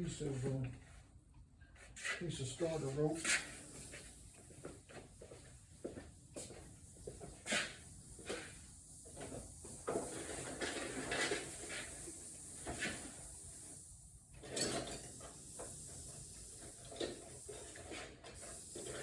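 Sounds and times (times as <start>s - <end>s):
tools and parts being moved: 9.2s - 12.0s, 14.4s - 15.4s.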